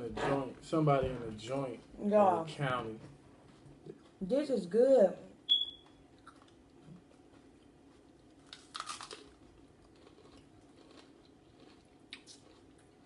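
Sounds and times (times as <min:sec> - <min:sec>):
faint chewing: 0:03.4 - 0:04.3, 0:05.8 - 0:13.0
crunchy bite into food: 0:08.4 - 0:12.7.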